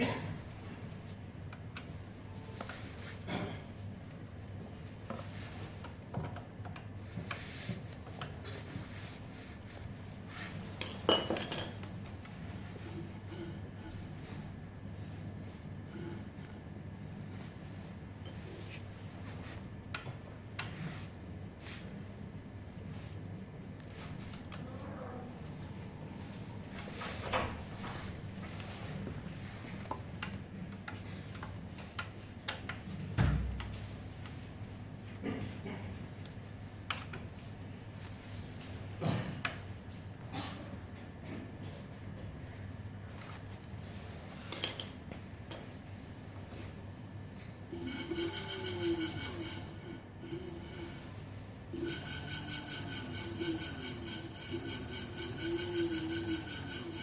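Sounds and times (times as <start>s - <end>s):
steady low hum: 0.0s - 29.6s, 45.1s - 57.0s
metal tools clinking and knocking: 10.8s - 11.8s
low steady hum: 44.8s - 57.0s.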